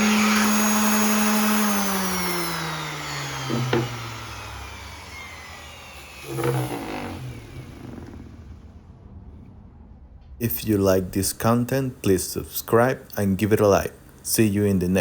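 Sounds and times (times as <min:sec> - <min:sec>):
orbital sander motor winding down: 0:00.0 - 0:08.7.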